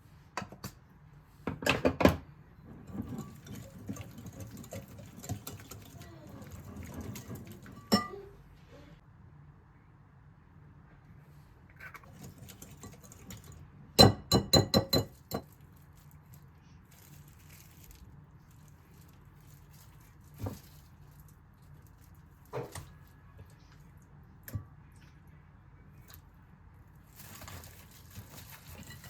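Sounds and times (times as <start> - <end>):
kitchenware clinking: 2.7 - 8.3, 12.0 - 15.6, 28.2 - 29.0.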